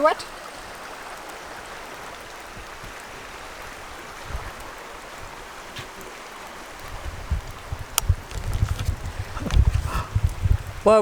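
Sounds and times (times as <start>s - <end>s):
river rushing: 0.0s - 11.0s
low thumps: 6.8s - 11.0s.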